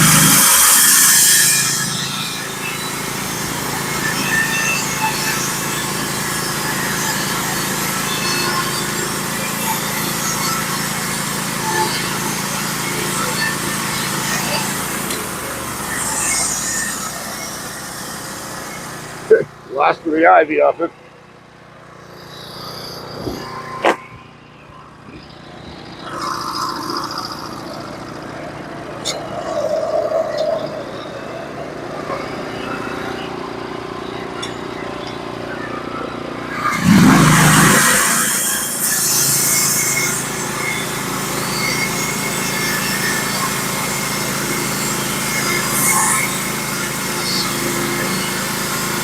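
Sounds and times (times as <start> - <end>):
bandsaw mill sawing log: 0.0 - 20.9, 25.8 - 49.0
sawmill engine running: 0.0 - 49.0.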